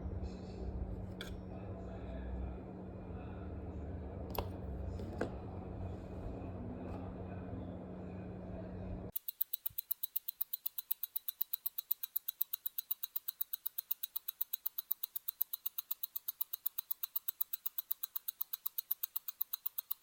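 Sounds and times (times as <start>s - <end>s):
low steady hum: 0.0s - 9.1s
pocket watch ticking: 9.1s - 20.0s.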